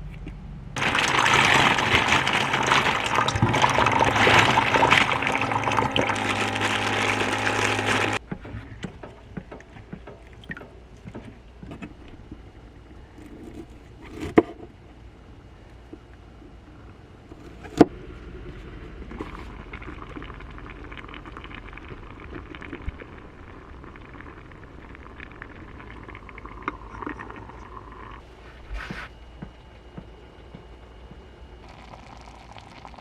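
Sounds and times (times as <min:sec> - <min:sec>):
water running from tap: 0:00.8 - 0:08.2.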